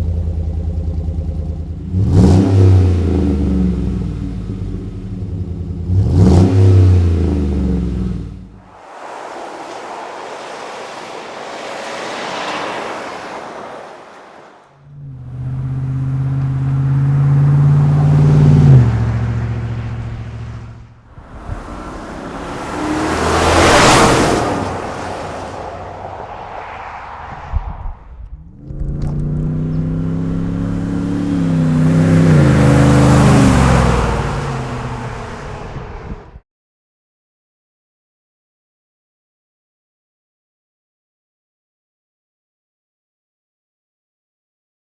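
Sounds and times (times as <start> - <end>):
pickup truck accelerating hard: 1.7 - 36.4
truck rushing past: 6.0 - 36.4.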